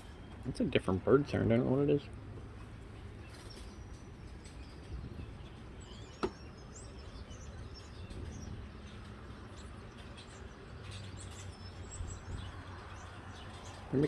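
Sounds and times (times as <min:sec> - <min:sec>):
birds chirping faintly: 0:00.0 - 0:14.0
low wind rumble: 0:00.0 - 0:14.0.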